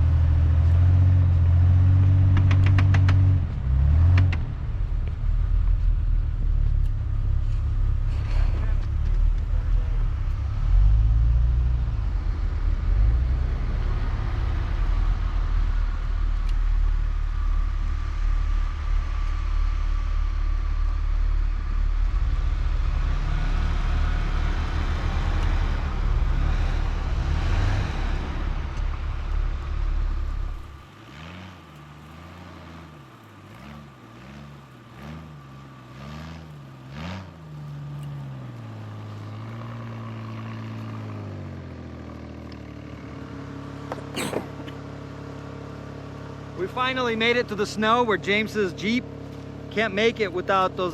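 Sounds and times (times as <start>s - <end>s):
engine and drivetrain rumble: 0.0s - 50.9s
engine revving: 0.0s - 50.9s.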